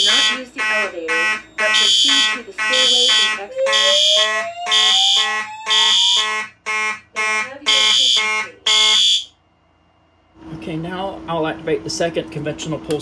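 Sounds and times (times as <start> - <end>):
slow whoop alarm tone: 0.0 - 9.3
fire alarm horn pulsing: 0.0 - 9.4
mechanical fire alarm horn: 0.0 - 9.4.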